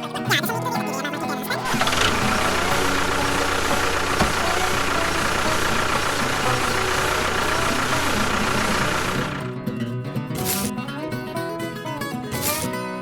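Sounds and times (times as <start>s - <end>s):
small engine whining: 1.6s - 9.6s.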